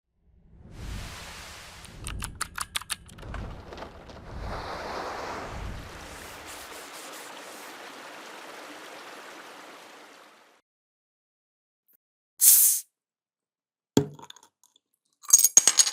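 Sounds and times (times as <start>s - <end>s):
steady rushing hiss: 5.8s - 10.1s.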